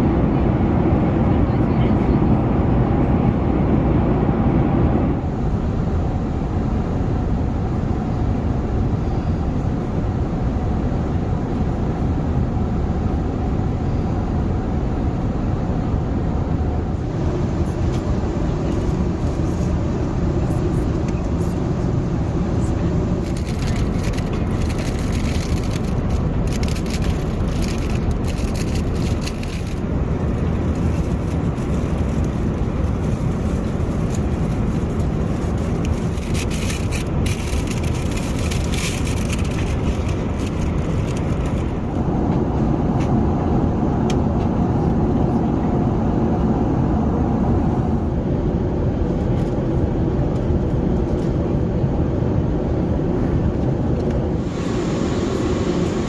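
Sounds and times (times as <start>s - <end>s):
airplane cabin noise: 0.0s - 56.0s
steady hum: 54.2s - 56.0s.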